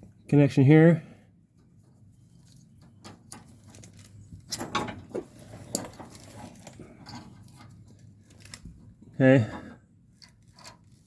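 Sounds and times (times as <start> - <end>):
metal cable hardware clinking: 10.2 - 11.0.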